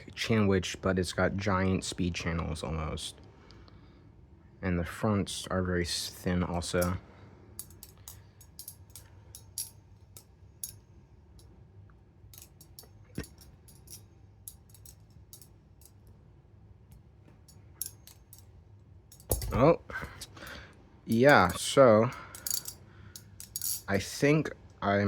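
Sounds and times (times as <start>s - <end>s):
butterfly knife metallic clacks: 7.6s - 10.8s, 12.3s - 16.0s, 17.4s - 18.5s, 22.3s - 23.9s.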